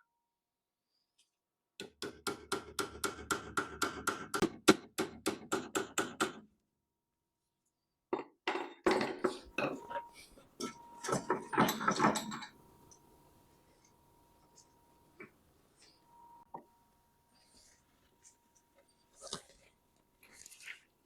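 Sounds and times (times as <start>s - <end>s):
hammer tapping on metal: 1.8s - 6.4s
knocks and clatter: 10.6s - 12.6s.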